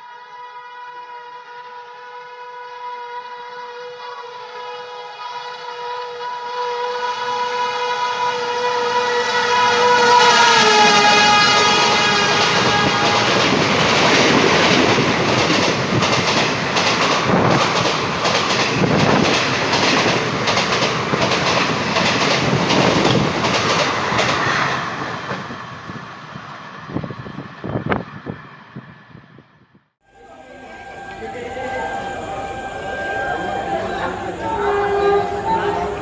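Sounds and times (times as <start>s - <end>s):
locomotive horn: 0.0s - 14.4s, 30.0s - 36.0s
train coaches rushing past: 4.4s - 29.6s
clickety-clack of train wheels: 10.3s - 25.6s.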